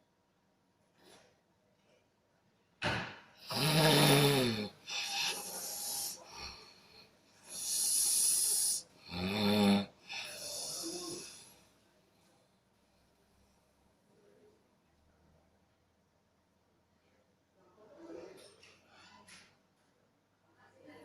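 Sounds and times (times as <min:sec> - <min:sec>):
hissing breath out: 0:03.4 - 0:09.2, 0:10.1 - 0:11.5
person snoring: 0:03.4 - 0:11.5.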